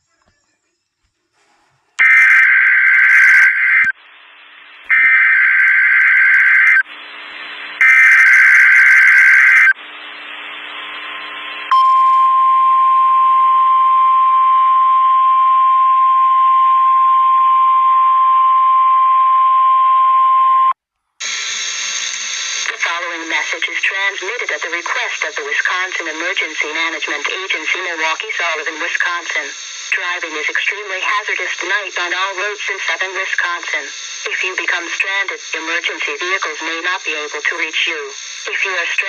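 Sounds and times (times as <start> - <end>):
static hiss: 1.4 - 11.7, 21.2 - 39.0
screeching digital data bursts: 2.0 - 3.9, 7.8 - 9.8.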